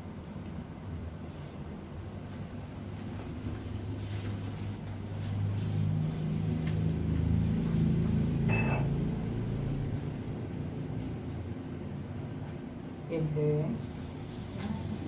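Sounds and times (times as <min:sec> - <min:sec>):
low mechanical hum: 0:00.0 - 0:15.0
brief high-pitched tone: 0:08.5 - 0:08.9.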